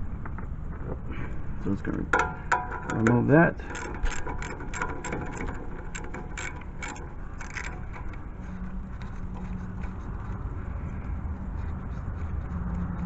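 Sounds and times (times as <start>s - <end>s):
steady low hum: 0.0s - 13.0s
ratchet clicking: 2.2s - 8.3s.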